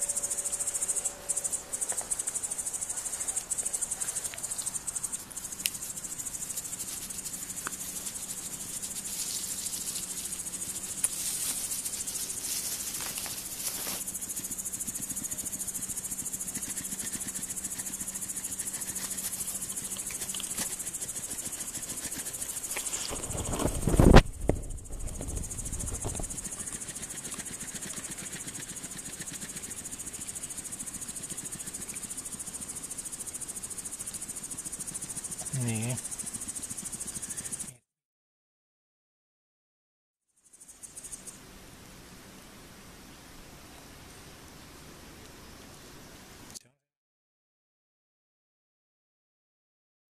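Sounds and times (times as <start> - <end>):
insect chirring: 0.0 - 37.8, 40.3 - 41.6.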